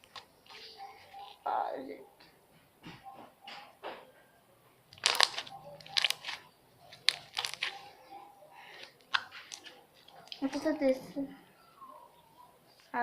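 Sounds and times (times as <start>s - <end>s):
slime crackling and popping: 4.9s - 7.8s, 9.0s - 10.6s.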